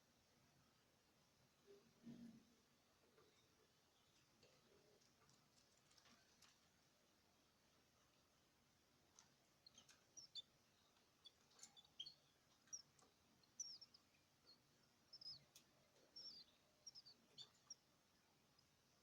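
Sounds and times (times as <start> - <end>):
small birds chirping: 9.0 - 19.0.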